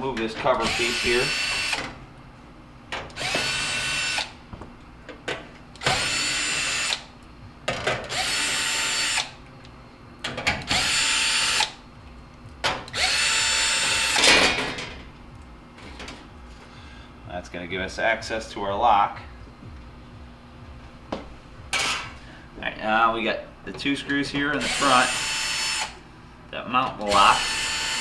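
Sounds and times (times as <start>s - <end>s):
cordless drill motor whine: 0.6s - 2.0s, 3.2s - 4.4s, 5.8s - 7.1s, 8.1s - 9.4s, 10.7s - 11.8s, 12.9s - 14.4s, 24.6s - 26.0s, 27.1s - 28.0s.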